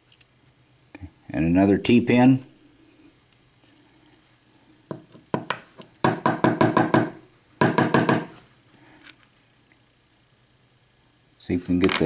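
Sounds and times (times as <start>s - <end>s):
lock knocking on hard surface: 6.1s - 8.3s.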